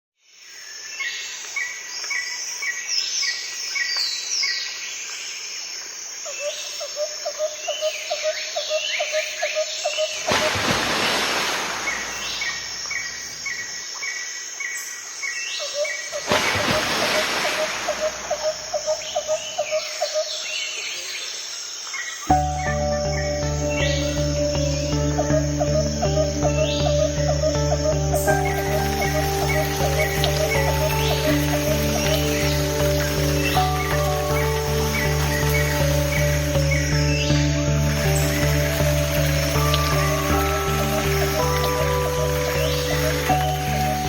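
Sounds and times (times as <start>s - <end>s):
birds chirping: 7.5s - 44.0s
high insect-like hum: 16.1s - 20.4s, 22.3s - 44.0s.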